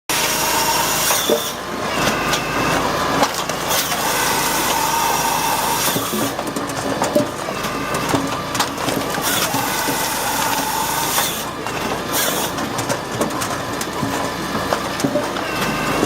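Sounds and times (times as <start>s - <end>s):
high machine whine: 0.1s - 16.0s
machine drone: 0.1s - 16.0s
wood knocks and cracks: 4.7s - 15.5s.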